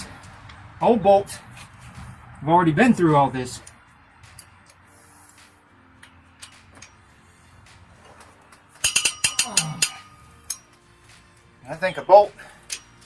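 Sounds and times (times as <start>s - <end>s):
sharp metallic cracks with ringing: 8.6s - 10.8s
wrench click: 8.8s - 10.6s.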